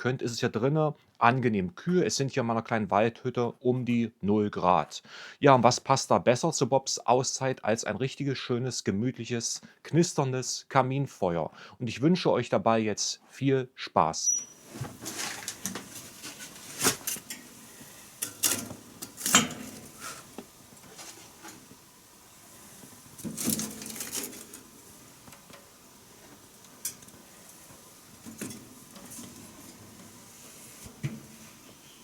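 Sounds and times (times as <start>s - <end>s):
faint steady hiss: 0.0s - 32.0s
wood fire crackling and popping: 14.6s - 32.0s.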